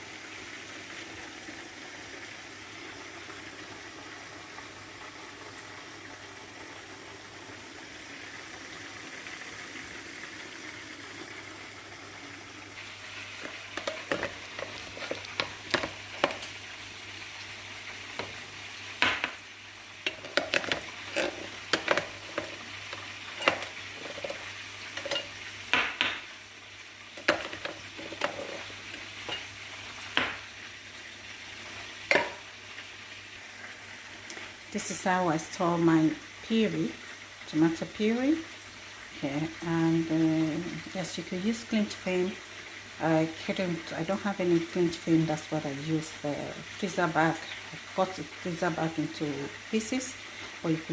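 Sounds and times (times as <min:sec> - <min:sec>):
utensils clinking and scraping: 0:13.4 - 0:16.4, 0:20.0 - 0:25.4, 0:27.2 - 0:29.5.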